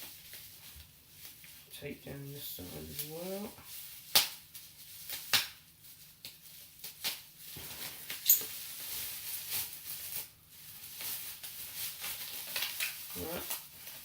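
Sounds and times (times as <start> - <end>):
packing tape rustling: 0.0 - 1.7, 2.6 - 14.0.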